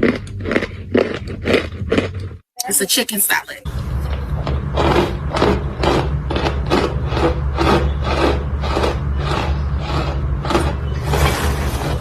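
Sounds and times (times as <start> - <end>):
cornstarch chunks crunching: 0.0 - 2.3, 4.0 - 11.2.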